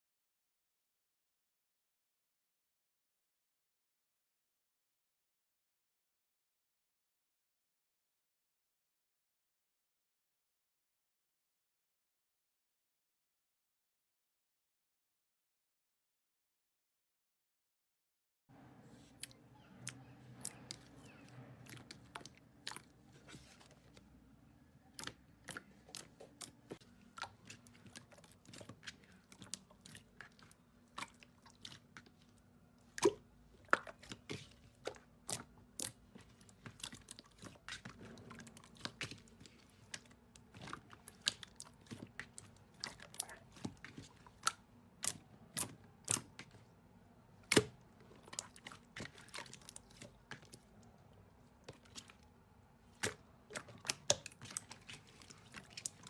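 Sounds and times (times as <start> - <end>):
slime clicking and popping: 47.4 - 50.6.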